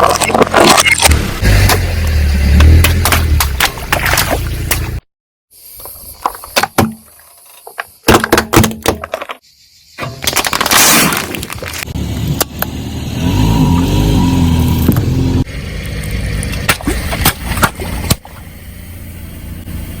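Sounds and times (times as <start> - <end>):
objects cracking under car tyre: 0.0 - 5.0, 10.0 - 12.7.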